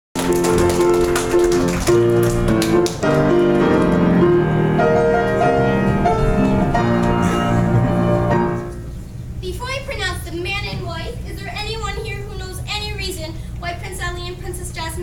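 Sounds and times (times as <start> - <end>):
instrumental keyboard music: 0.2 - 8.9.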